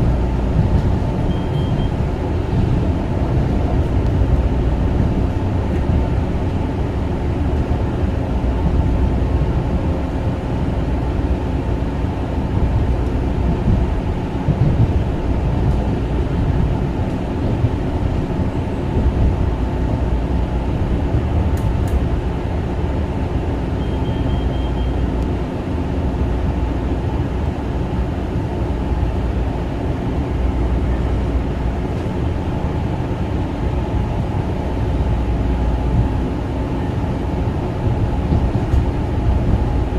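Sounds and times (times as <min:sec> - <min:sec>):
train wheels rumbling on rail: 0:00.0 - 0:39.9.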